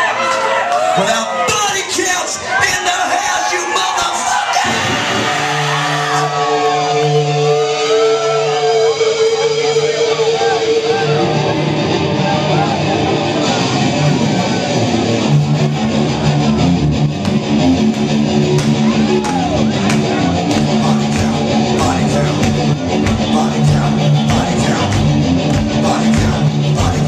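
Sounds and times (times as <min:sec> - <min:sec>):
distorted electric guitar riff: 0:04.6 - 0:27.0
drums: 0:08.9 - 0:27.0.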